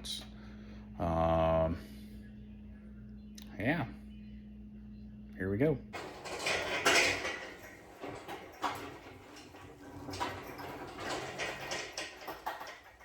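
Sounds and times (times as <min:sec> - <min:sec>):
metal clanks and knocks: 0:06.0 - 0:13.0
metal scraping: 0:06.0 - 0:13.0.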